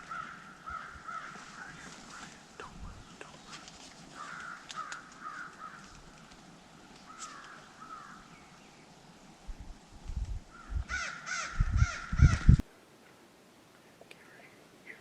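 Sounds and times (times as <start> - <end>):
crows cawing: 0.0 - 1.7, 4.1 - 6.2, 7.0 - 8.2, 10.5 - 12.6
low rumbles on microphone: 9.5 - 12.6.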